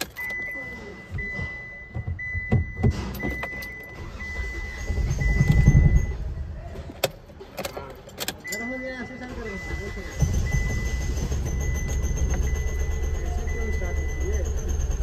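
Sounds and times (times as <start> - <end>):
car warning chime beeping: 0.0 - 6.3, 7.6 - 15.0
diesel engine idling unevenly: 8.9 - 15.0.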